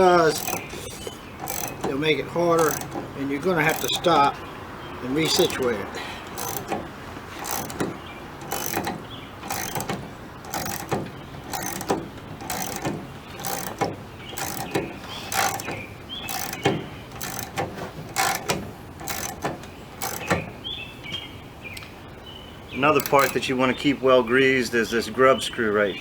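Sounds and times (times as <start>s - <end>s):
hand tool metallic clicks: 0.0s - 2.0s, 2.6s - 4.3s, 5.2s - 5.7s, 6.3s - 6.8s, 7.4s - 20.4s, 23.0s - 23.4s.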